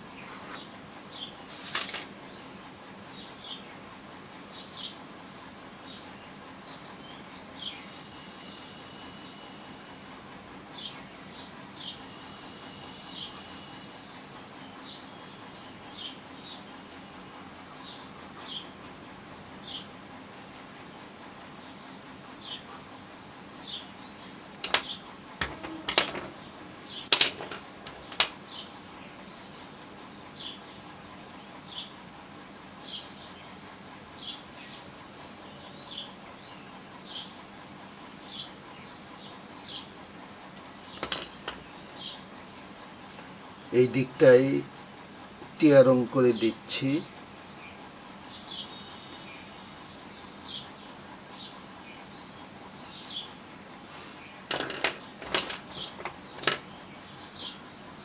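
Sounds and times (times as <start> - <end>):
small bird chirping: 22.4 - 29.7, 32.8 - 45.0, 46.3 - 58.0.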